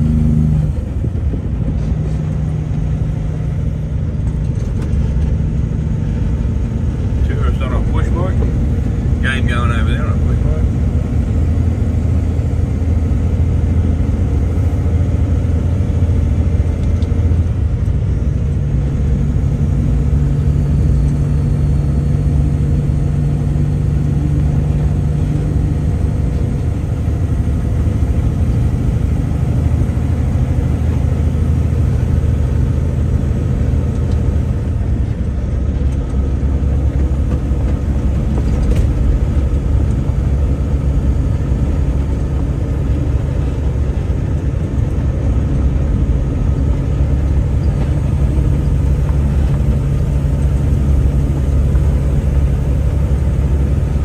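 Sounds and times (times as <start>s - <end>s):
truck engine and road noise: 0.0s - 54.0s.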